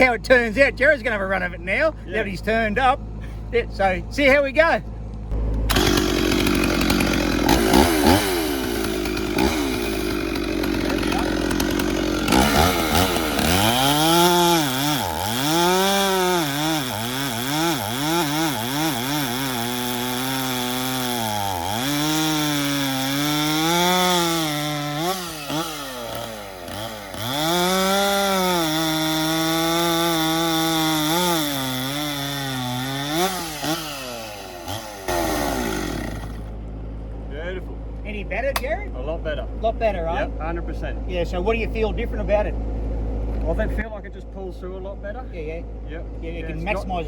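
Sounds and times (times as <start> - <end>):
chainsaw cutting wood: 5.4 - 36.5.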